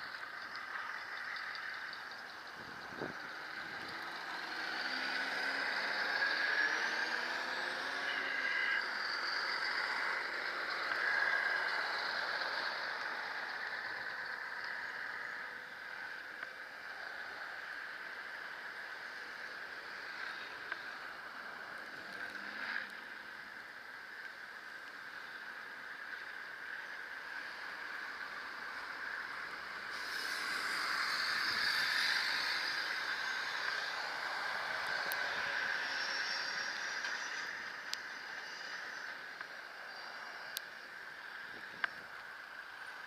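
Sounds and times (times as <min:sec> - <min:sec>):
tyres and wind rushing: 0:00.0 - 0:43.0.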